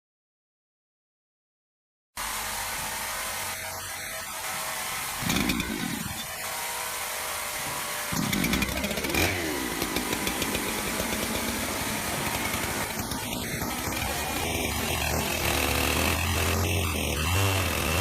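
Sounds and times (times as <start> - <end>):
chainsaw engine revving: 4.7 - 18.0.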